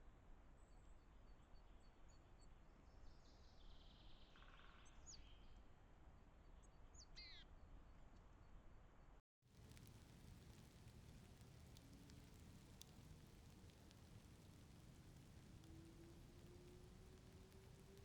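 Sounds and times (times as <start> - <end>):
low steady background noise: 9.5 - 18.0.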